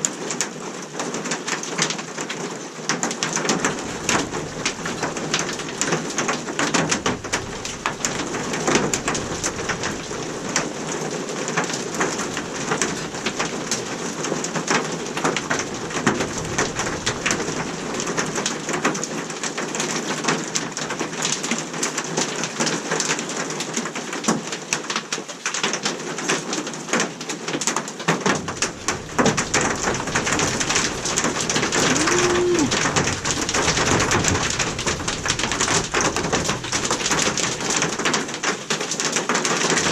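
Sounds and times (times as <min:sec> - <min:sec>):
hailstones pelting down: 0:03.1 - 0:22.0, 0:28.1 - 0:39.9.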